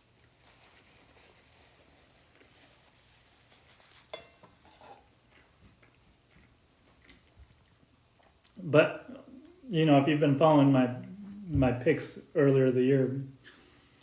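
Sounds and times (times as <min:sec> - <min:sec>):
tableware clinking: 0:04.2 - 0:04.5.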